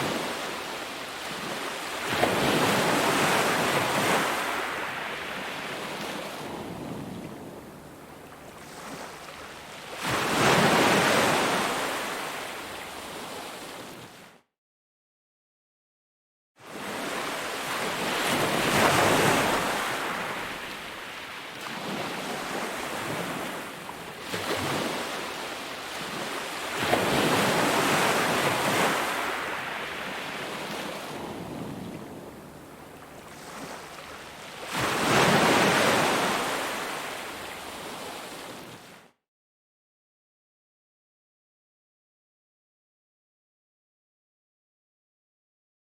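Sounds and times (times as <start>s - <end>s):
ocean waves breaking on shore: 0.0s - 14.3s, 16.6s - 39.1s.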